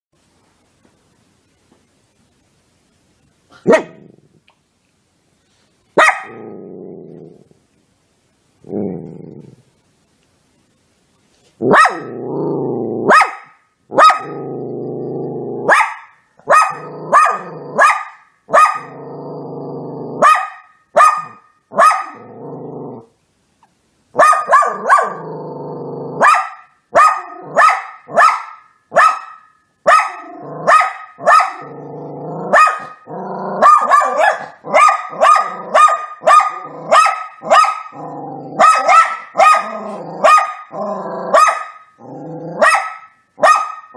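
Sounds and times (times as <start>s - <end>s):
puppy barking: 3.6s - 4.0s, 6.0s - 6.4s, 11.6s - 12.2s, 13.0s - 14.4s, 15.6s - 19.0s, 20.2s - 22.2s, 24.2s - 25.2s, 26.2s - 31.7s, 32.5s - 33.0s, 33.6s - 38.0s, 38.6s - 40.7s, 41.3s - 41.9s, 42.6s - 43.9s
dog growling: 6.3s - 7.6s, 8.6s - 9.7s, 12.0s - 13.1s, 14.3s - 15.7s, 18.8s - 20.2s, 22.1s - 23.1s, 31.6s - 33.7s, 38.0s - 38.8s, 39.6s - 41.4s, 42.0s - 42.6s.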